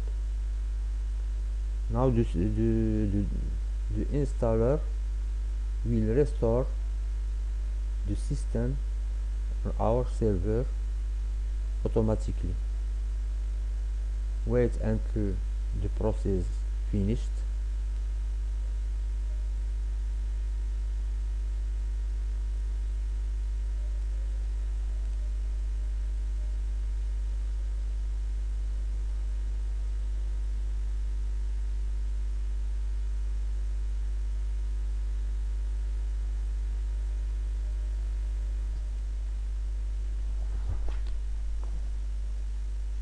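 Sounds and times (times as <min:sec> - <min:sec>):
electrical mains hum: 0:00.0 - 0:43.0.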